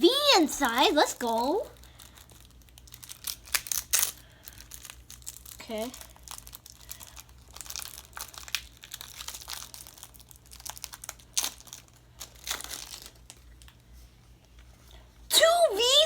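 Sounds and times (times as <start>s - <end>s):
foil wrapper tearing and crinkling: 1.8s - 13.8s.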